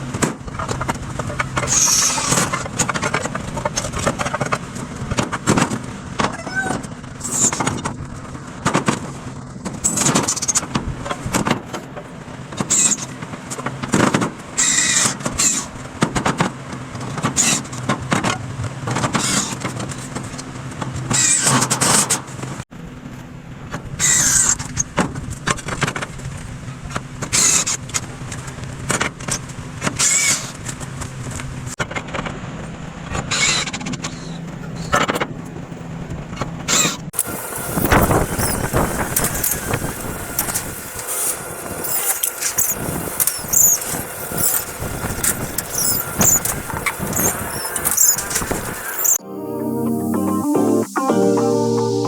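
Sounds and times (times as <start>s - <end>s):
power tools running in bursts: 37.2s - 49.2s
high squealing streaks: 41.8s - 52.0s.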